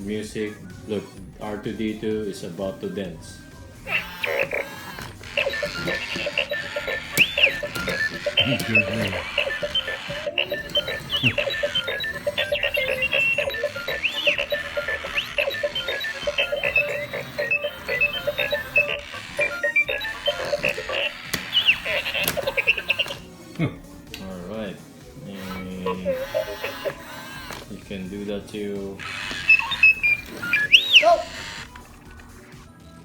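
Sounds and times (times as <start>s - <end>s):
robot toy beeps and chirps: 3.8s - 23.3s, 25.4s - 27.6s, 28.9s - 32.5s
pulsing electronic tune: 3.9s - 23.2s, 25.9s - 27.1s, 29.0s - 31.7s.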